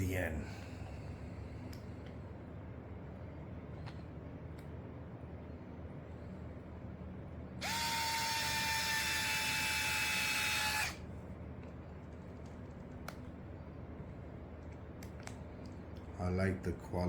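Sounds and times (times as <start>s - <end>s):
electric screwdriver motor whine: 7.6s - 11.0s.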